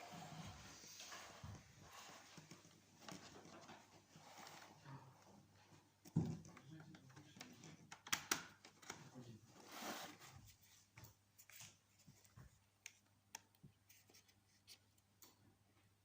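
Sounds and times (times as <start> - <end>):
faint clicks and taps: 6.0 - 9.1, 10.8 - 15.9
soft rustle: 13.8 - 14.9.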